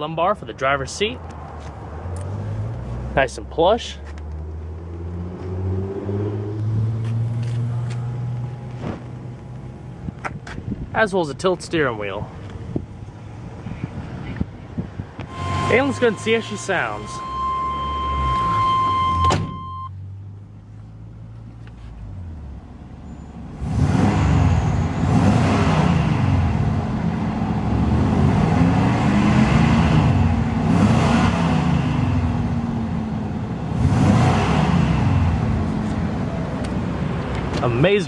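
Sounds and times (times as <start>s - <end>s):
truck engine idling and revving: 0.0s - 38.0s
electronic warning tone: 15.3s - 19.9s.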